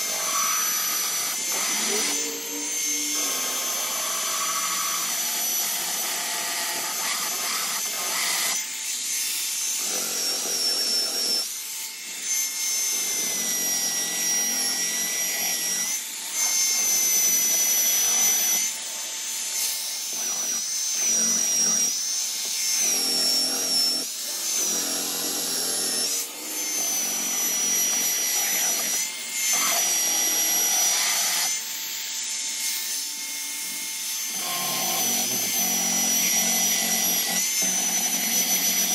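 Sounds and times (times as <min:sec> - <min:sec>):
sander rasping against wood: 0:00.0 - 0:08.7, 0:12.1 - 0:38.9
electric sander whining: 0:00.0 - 0:09.1, 0:09.8 - 0:38.9.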